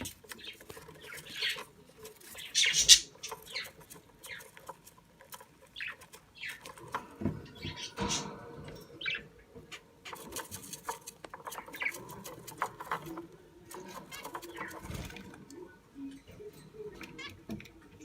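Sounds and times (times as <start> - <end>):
scratching sounds: 0.0 - 15.6
budgerigar chirping: 2.4 - 4.5.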